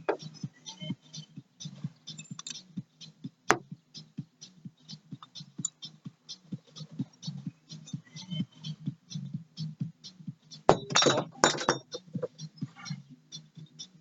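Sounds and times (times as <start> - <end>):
metal tools clicking and knocking: 2.2 - 2.6, 10.7 - 12.0.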